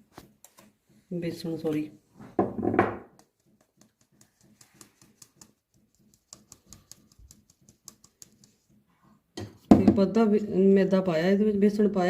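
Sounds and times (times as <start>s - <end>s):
sieve ticking while shaken: 3.2s - 8.9s.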